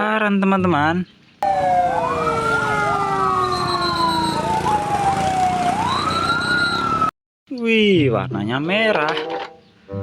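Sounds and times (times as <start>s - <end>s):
siren wailing: 1.4s - 7.1s
siren warbling yelps: 1.4s - 7.1s.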